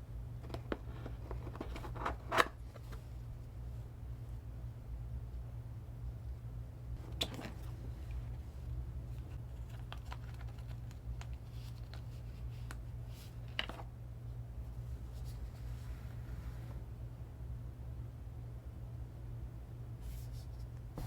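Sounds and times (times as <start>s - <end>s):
steady low hum: 0.0s - 21.0s
packaging crinkling: 9.4s - 12.1s.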